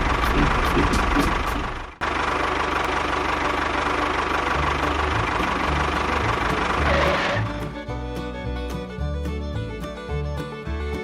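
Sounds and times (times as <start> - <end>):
small motor droning: 0.0 - 7.9.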